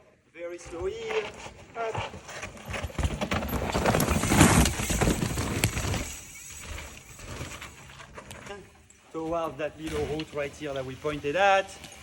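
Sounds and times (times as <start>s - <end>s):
tyres scrabbling over rock: 1.3s - 8.6s.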